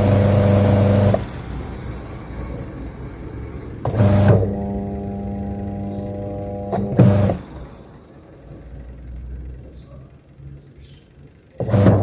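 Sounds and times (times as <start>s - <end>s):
washing machine motor humming: 0.0s - 2.9s, 3.8s - 8.4s, 11.6s - 12.0s.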